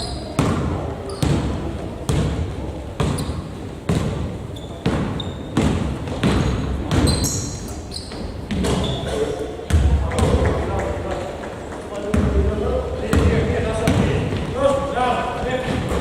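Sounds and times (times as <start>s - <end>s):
sneaker squeaks: 0.0s - 2.4s, 3.0s - 9.9s
basketball bouncing: 0.3s - 7.4s, 9.7s - 10.6s, 13.1s - 14.4s.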